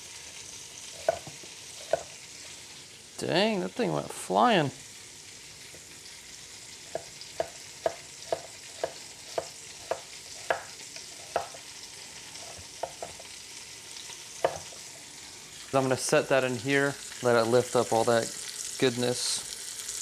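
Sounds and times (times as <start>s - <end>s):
food sizzling in a pan: 0.0s - 20.0s
utensil tapping a pan: 6.9s - 11.7s, 14.4s - 14.7s.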